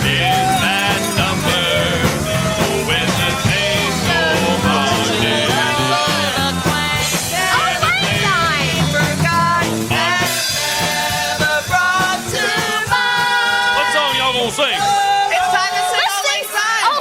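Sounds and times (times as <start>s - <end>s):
rock music: 0.0s - 15.8s.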